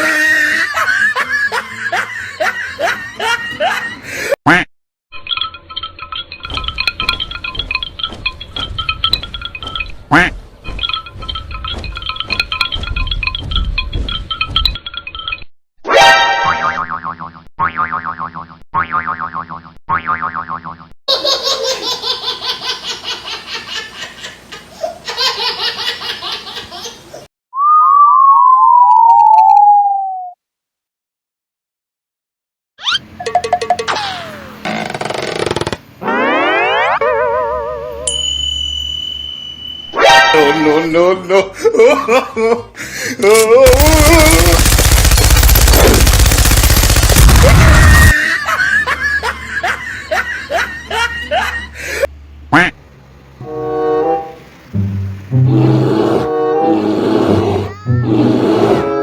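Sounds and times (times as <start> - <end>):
pulsing laughter: 0.0 - 4.3, 40.7 - 44.6, 47.3 - 52.1
cartoon whistling swoops: 27.5 - 30.4, 36.0 - 38.1
short rising chirps: 27.6 - 30.4, 36.0 - 40.0
harsh rapid crackling: 43.7 - 48.1.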